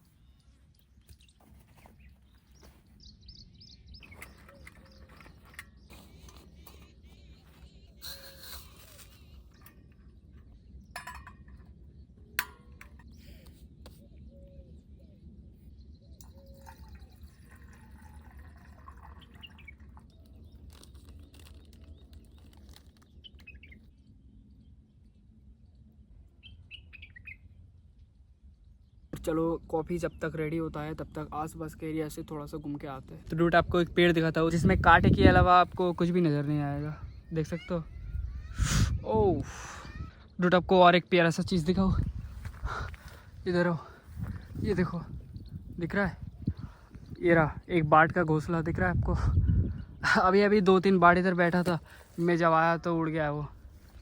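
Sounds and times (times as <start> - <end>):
faint bird chirping: 0.0 - 33.0, 35.8 - 40.7.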